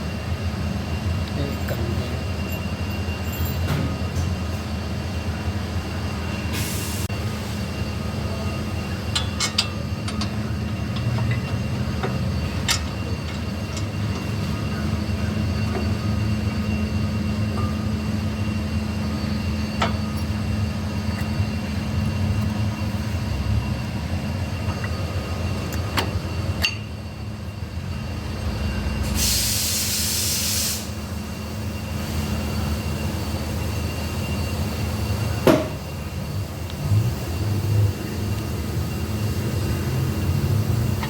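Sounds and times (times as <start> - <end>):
low mechanical hum: 0.0 - 29.5
spray hiss: 29.1 - 31.0.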